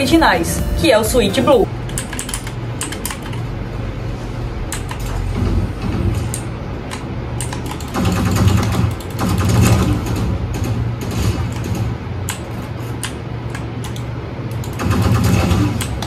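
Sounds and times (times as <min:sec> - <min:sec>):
mechanical keyboard clicks: 0:01.9 - 0:03.4.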